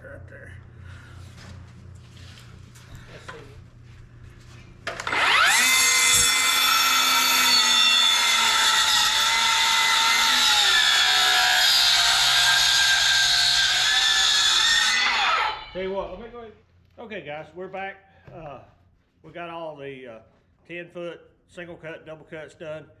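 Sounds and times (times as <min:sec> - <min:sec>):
circular saw cutting wood: 0:04.9 - 0:15.9.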